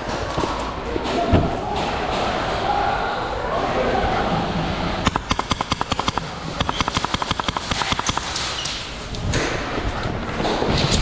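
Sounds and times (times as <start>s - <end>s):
airsoft gun firing full auto: 5.0s - 8.6s.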